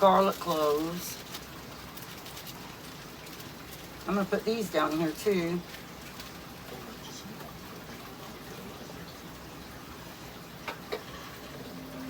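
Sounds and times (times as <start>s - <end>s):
low hiss: 6.8s - 12.0s.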